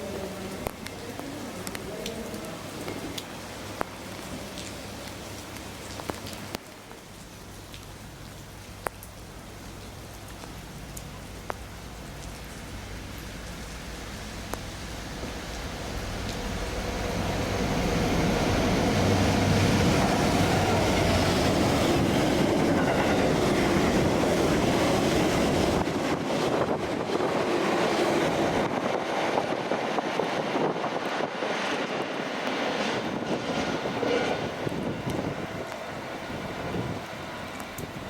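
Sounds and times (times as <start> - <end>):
train rumble: 10.5 - 38.0
wheels rattling on rails: 15.1 - 38.0.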